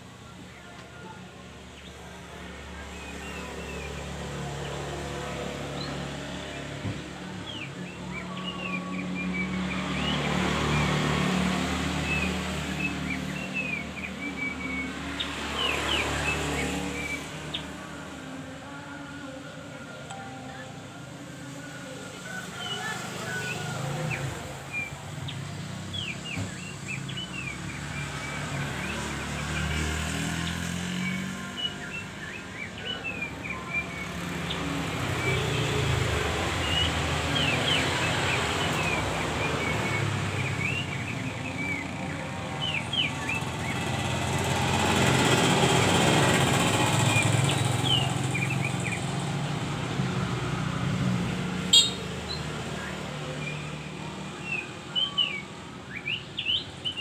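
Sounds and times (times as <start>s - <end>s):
motor traffic rumble: 0.0s - 57.0s
songbird chirping and whistling: 51.7s - 53.6s.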